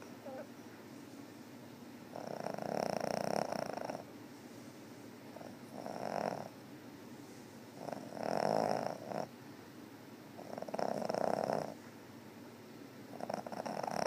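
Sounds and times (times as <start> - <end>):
pet snoring: 2.1 - 4.1, 5.3 - 6.6, 7.8 - 9.3, 10.4 - 11.8, 13.1 - 14.0.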